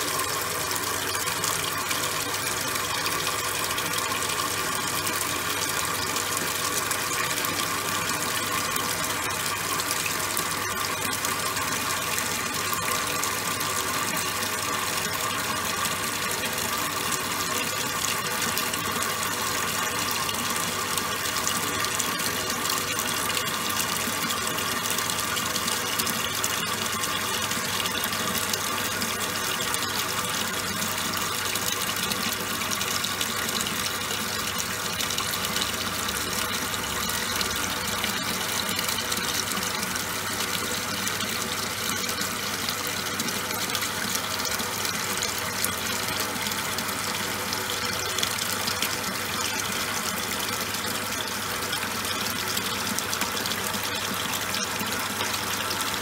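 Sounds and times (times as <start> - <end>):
water rushing in washing machine: 0.0 - 56.0.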